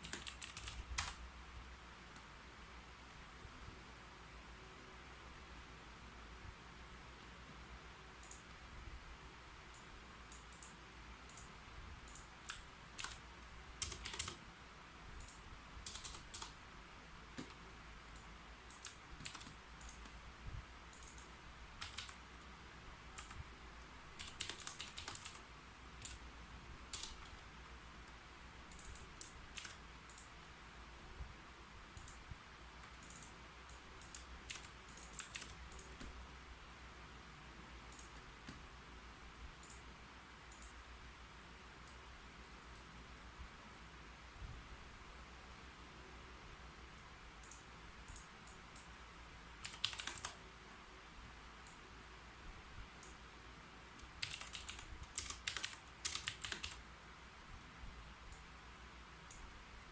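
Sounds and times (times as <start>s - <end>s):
keyboard typing: 0.0s - 1.2s, 9.7s - 14.4s, 15.2s - 16.6s, 17.3s - 20.2s, 20.9s - 22.2s, 23.1s - 23.4s, 24.2s - 26.2s, 26.9s - 27.5s, 28.7s - 30.4s, 32.8s - 36.2s, 49.6s - 50.4s, 54.0s - 56.8s.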